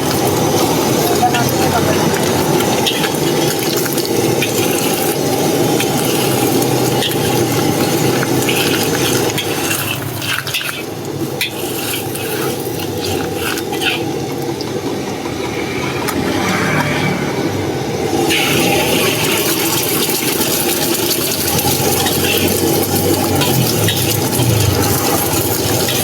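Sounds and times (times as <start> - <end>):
sizzling in a wok: 0.0 - 26.0
metal spatula scraping a pan: 2.1 - 14.3, 20.1 - 26.0.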